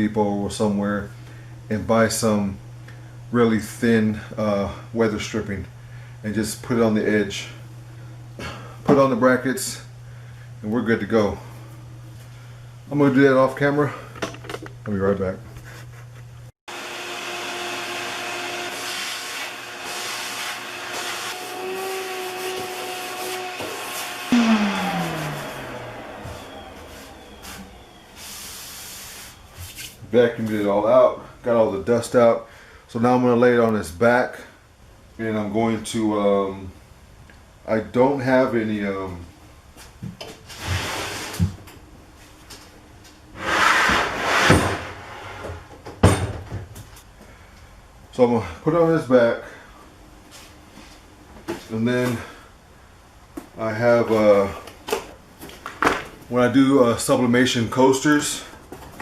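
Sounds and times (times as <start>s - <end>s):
vacuum cleaner motor whine: 16.7s - 29.8s
hissing air from nozzle: 22.2s - 29.9s
wood scraping across a surface: 43.4s - 45.6s.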